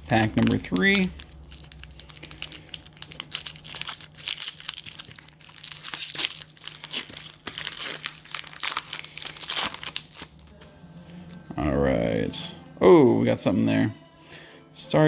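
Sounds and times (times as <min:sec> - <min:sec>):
foil wrapper crinkling: 0:00.0 - 0:10.7.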